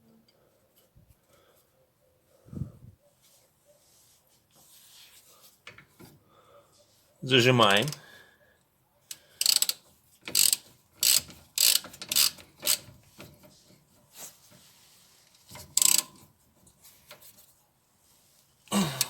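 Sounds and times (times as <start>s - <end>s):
ratchet wrench clicking: 9.4s - 12.9s, 15.6s - 16.2s.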